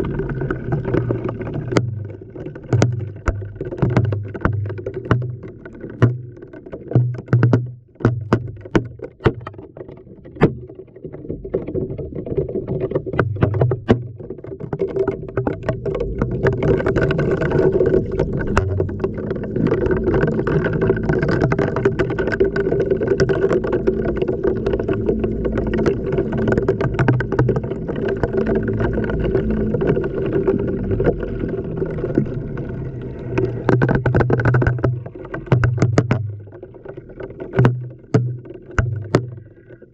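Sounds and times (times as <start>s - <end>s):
laundry knocking in washing machine drum: 7.0s - 9.6s.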